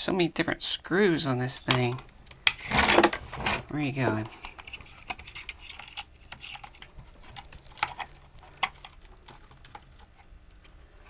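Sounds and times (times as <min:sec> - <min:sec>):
small plastic parts clicking: 0:04.3 - 0:10.8.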